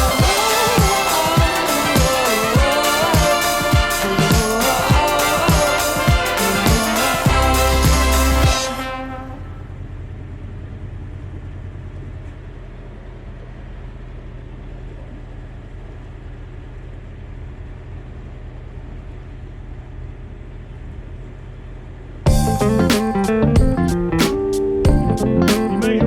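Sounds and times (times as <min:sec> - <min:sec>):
boat engine running: 0:00.0 - 0:26.0.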